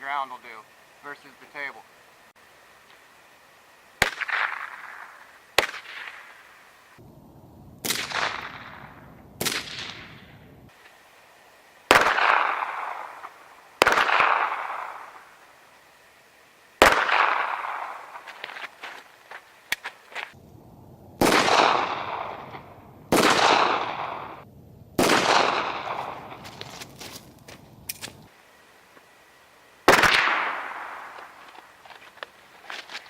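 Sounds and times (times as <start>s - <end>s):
gunshots with sharp crack and echo: 4.0s - 6.5s, 7.8s - 10.3s, 11.9s - 15.4s, 16.8s - 18.4s, 21.2s - 24.4s, 25.0s - 26.4s, 29.9s - 31.4s.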